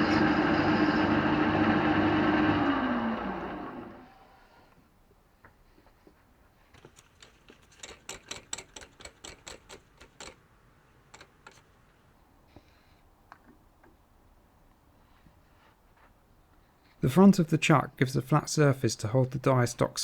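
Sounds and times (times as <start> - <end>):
tools clicking on metal lathe: 6.8 - 12.0.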